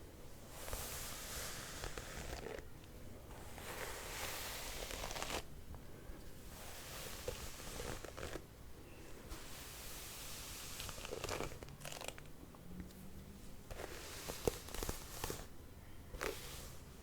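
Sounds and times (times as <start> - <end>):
hairbrush swishing through hair: 0.5 - 2.6, 3.4 - 5.5, 6.4 - 8.4, 9.2 - 11.7, 13.7 - 15.5, 16.2 - 17.0.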